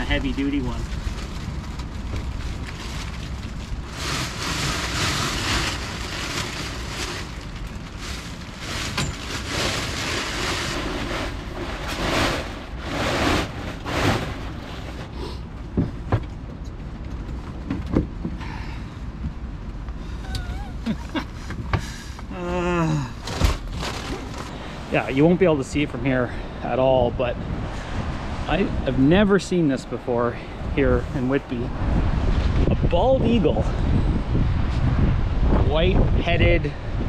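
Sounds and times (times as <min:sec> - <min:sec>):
tarp rustling and flapping: 0:00.0 - 0:15.1, 0:23.3 - 0:25.2
wind buffeting microphone: 0:24.8 - 0:37.0.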